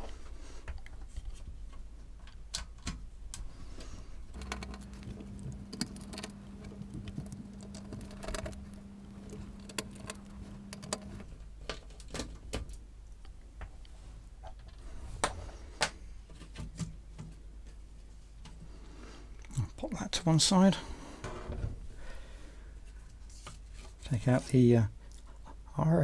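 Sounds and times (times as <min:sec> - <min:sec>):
clicks and rattles of handling: 0:04.4 - 0:11.2.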